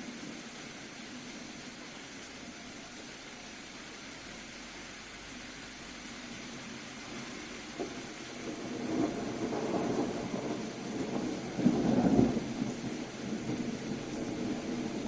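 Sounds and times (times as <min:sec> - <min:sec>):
rain hissing: 0:00.0 - 0:15.0
thunder rumbling: 0:07.1 - 0:15.0.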